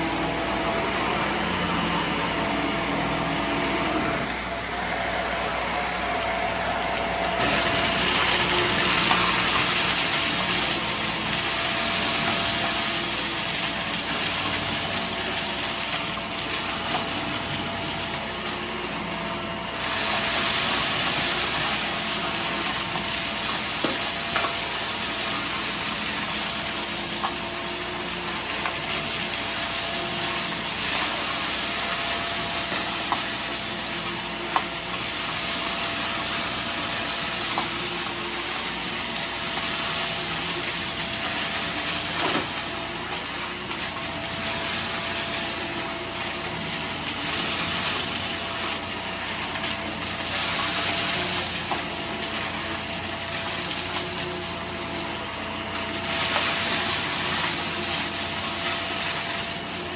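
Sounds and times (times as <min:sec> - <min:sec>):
vacuum cleaner running: 0:00.0 - 0:59.9
debris ticking through vacuum: 0:07.2 - 0:59.9.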